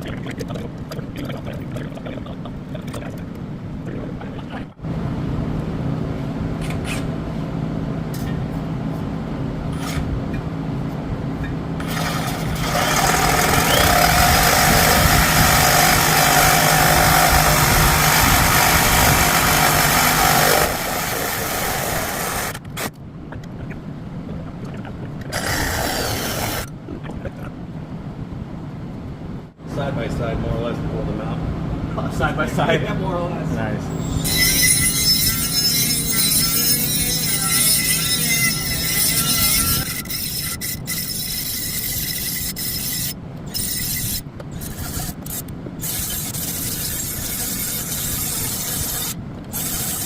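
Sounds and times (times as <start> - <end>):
loud exhaust hissing: 11.8 - 22.6.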